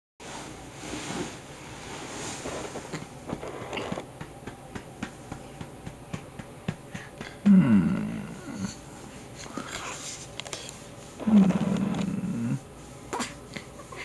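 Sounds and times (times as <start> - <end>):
light pats on a baby: 2.7 - 7.5.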